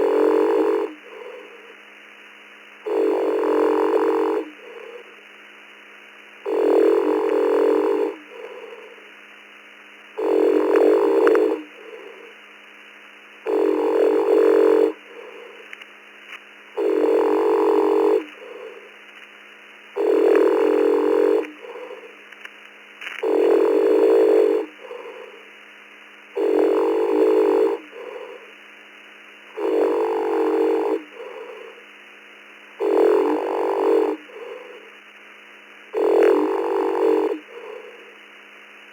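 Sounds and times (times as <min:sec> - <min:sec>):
man snoring over radio: 0:00.0 - 0:05.8, 0:06.4 - 0:09.3, 0:10.0 - 0:12.7, 0:13.3 - 0:19.2, 0:19.8 - 0:22.4, 0:23.0 - 0:38.9.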